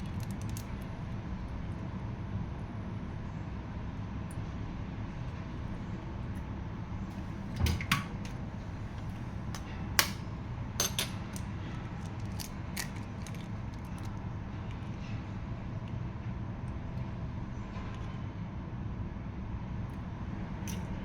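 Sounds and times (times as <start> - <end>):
steady low hum: 0.0 - 21.0
kitchenware clinking together: 10.8 - 11.4.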